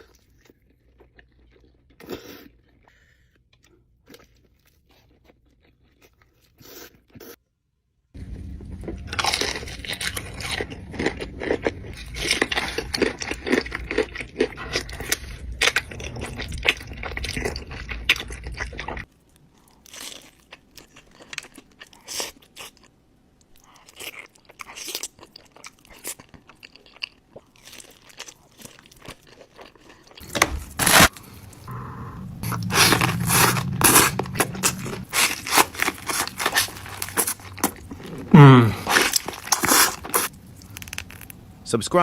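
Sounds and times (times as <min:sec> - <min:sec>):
crunching and chewing crispy food: 0:00.0 - 0:07.4, 0:08.2 - 0:41.6
small scrapes: 0:30.2 - 0:37.8, 0:38.8 - 0:40.3.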